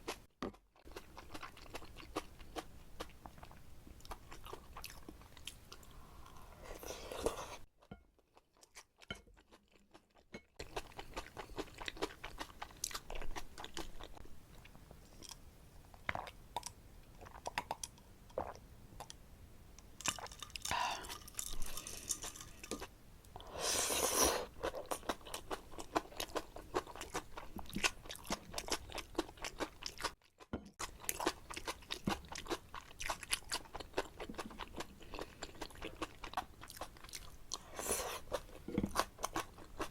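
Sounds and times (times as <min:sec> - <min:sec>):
slurping noodles: 0:23.4 - 0:24.6
wet chewing: 0:24.1 - 0:39.9.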